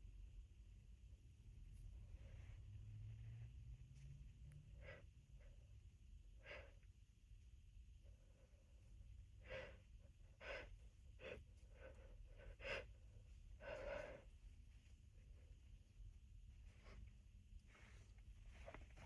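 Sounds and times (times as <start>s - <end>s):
person sniffing and breathing: 9.4s - 14.4s.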